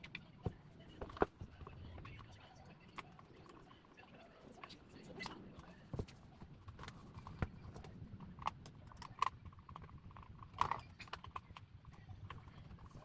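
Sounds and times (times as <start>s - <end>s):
plastic parts clicking and knocking: 5.9s - 13.0s.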